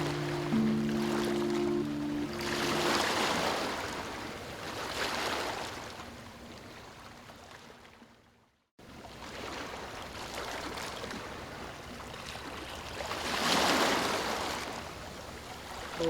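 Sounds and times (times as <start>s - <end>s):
ocean waves washing on shore: 0.0s - 6.0s.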